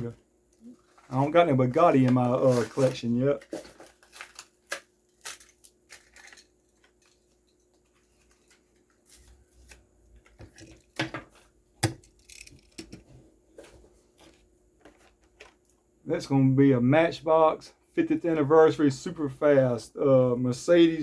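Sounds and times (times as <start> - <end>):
plastic packaging crinkling: 0.6 - 9.5.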